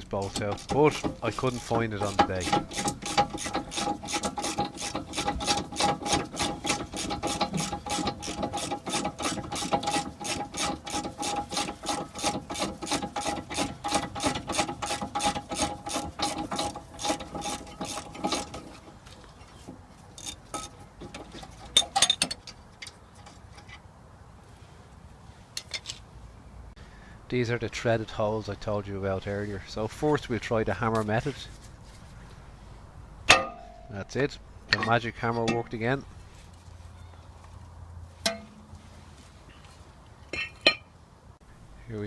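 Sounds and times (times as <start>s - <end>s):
sharp metallic knocks: 0.0s - 18.8s, 33.2s - 35.9s, 38.2s - 38.7s
hand ratchet clicking: 0.0s - 18.9s.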